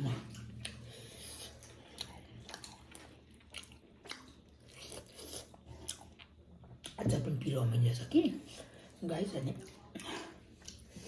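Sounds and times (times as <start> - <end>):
person chewing: 0.2 - 7.0, 9.7 - 11.0.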